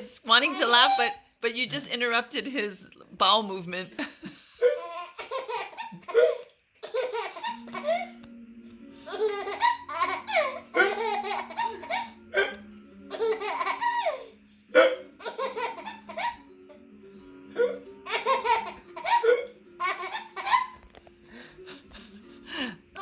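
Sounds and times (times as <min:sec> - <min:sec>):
baby laughing: 0:00.0 - 0:01.2, 0:04.6 - 0:08.2, 0:09.1 - 0:16.8, 0:17.6 - 0:20.9.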